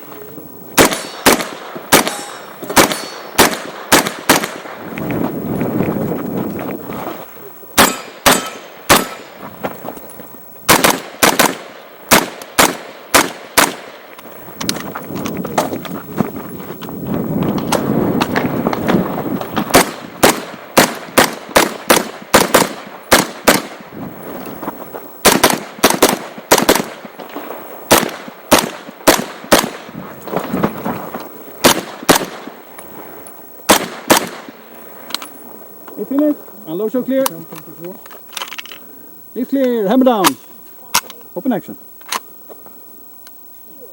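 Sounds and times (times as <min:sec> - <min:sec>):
gunshots: 0:00.8 - 0:04.8, 0:07.8 - 0:09.4, 0:10.7 - 0:14.1, 0:19.6 - 0:23.9, 0:25.2 - 0:27.2, 0:27.9 - 0:30.0, 0:31.6 - 0:32.6, 0:33.7 - 0:34.6.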